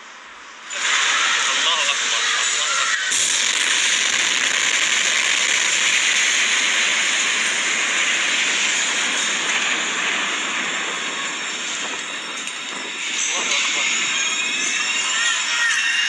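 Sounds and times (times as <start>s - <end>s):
explosion blast rushing noise: 3.1s - 15.5s.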